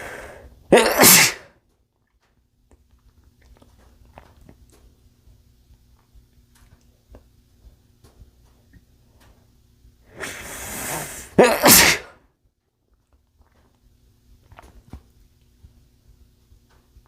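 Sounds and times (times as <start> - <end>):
drawn-in breath: 0.0 - 0.6, 10.1 - 11.4
man sneezing: 0.0 - 1.5, 10.2 - 12.2.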